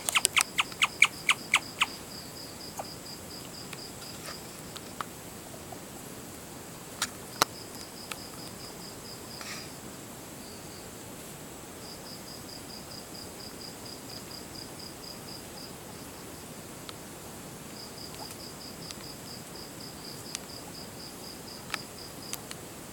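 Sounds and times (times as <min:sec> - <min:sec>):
sharp clicks: 0:00.0 - 0:01.9
guinea pig chirping: 0:00.0 - 0:02.0.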